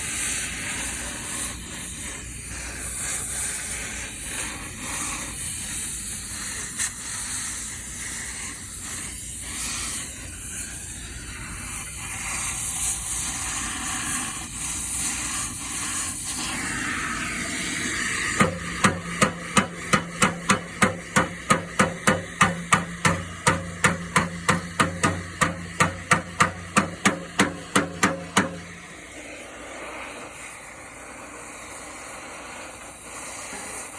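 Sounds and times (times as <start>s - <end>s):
uneven hissing: 0.0s - 33.9s
hammer beating steel plate: 18.2s - 28.9s.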